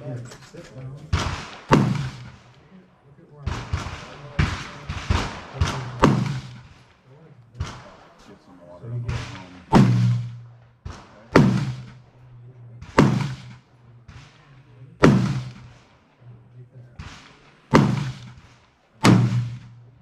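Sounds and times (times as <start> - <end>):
fainter distant gunshots: 0.0 - 20.0
loud gunshots echoing: 1.0 - 20.0
low steady hum: 7.2 - 10.8.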